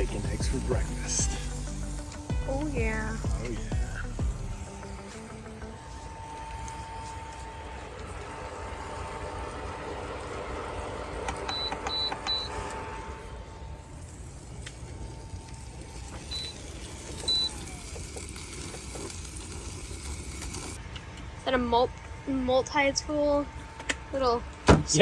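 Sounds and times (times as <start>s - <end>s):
induction cooktop whine: 0.0s - 25.0s
control panel beeps: 11.5s - 12.5s.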